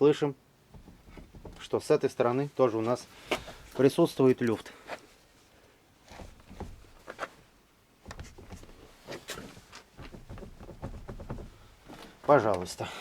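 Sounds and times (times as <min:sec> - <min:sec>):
car door knocking in hinges: 0:00.7 - 0:01.7, 0:06.1 - 0:07.1, 0:08.1 - 0:08.9, 0:10.0 - 0:12.1.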